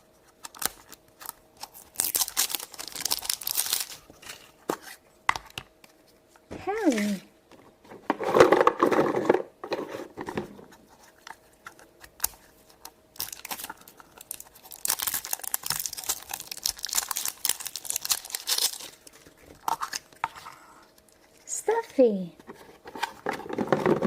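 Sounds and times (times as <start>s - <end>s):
toy packaging torn and crinkled: 0.4s - 4.0s, 13.2s - 20.1s.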